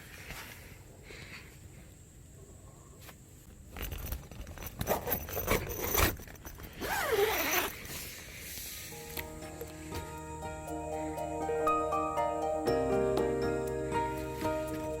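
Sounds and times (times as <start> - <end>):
gear scraping and rustling: 3.4 - 8.9.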